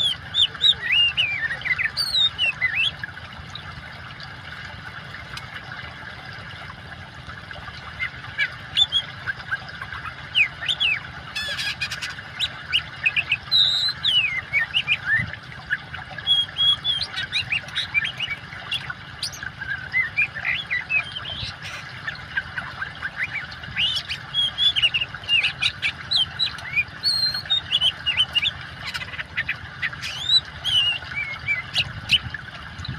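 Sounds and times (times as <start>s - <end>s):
bird singing whistles and chirps: 0.0s - 2.9s, 13.1s - 15.3s, 23.2s - 29.0s, 30.0s - 31.8s
trickle of running water: 0.0s - 32.9s.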